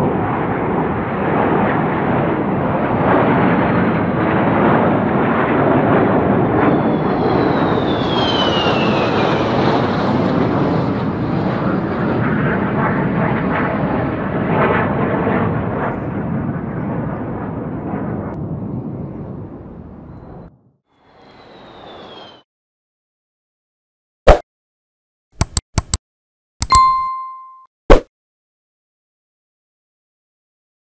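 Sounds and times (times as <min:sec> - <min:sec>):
fighter jet roaring past: 0:00.0 - 0:22.4.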